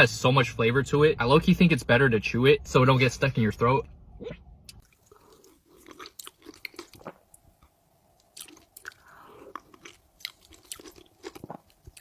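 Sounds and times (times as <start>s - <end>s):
person chewing wetly: 4.7s - 12.0s.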